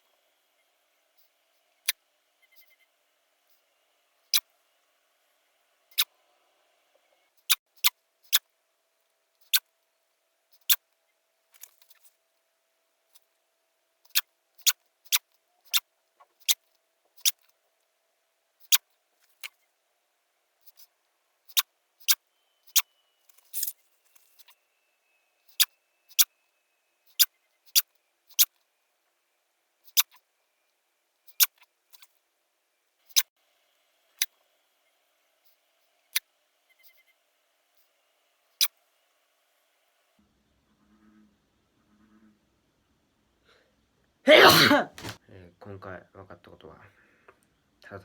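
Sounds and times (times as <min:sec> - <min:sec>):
person sneezing: 0:44.3 - 0:45.2.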